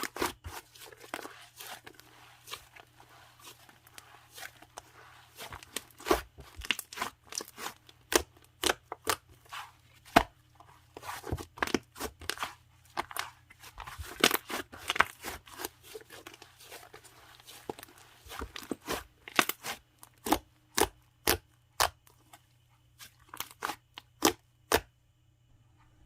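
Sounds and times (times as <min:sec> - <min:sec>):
slime crackling and popping: 0:05.4 - 0:09.3.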